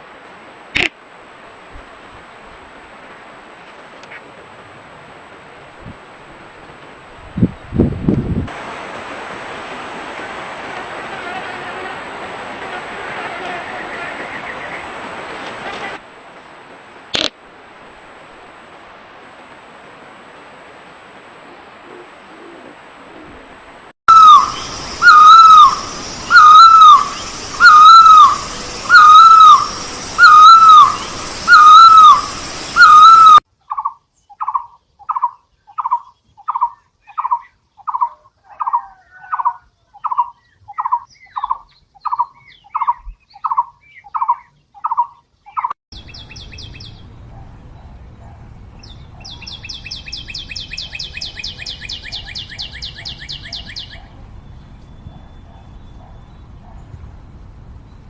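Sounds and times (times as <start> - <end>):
bird whistled calls: 24.1 - 33.4, 48.8 - 56.4
bird high trill: 24.1 - 33.9.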